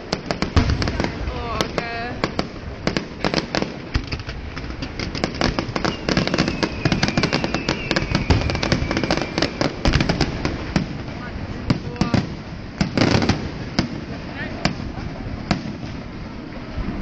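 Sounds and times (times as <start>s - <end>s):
fireworks booms: 0.0s - 17.0s
fireworks crackling: 0.0s - 17.0s
falling whistle: 5.8s - 9.8s.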